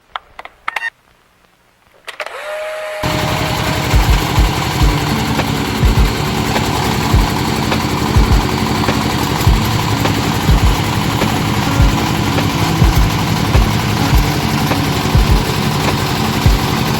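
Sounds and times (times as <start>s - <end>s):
drilling machine engine running: 3.0s - 16.9s
heavy low thumps: 5.8s - 6.2s, 8.2s - 8.5s, 9.5s - 9.8s, 10.5s - 10.9s, 11.8s - 12.0s, 12.7s - 14.4s, 15.1s - 15.5s.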